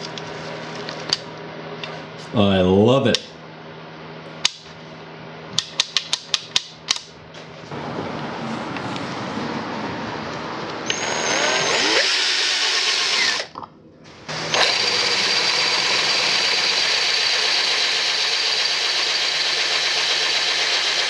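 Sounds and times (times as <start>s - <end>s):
power drill whining: 10.7s - 13.6s, 14.3s - 21.0s.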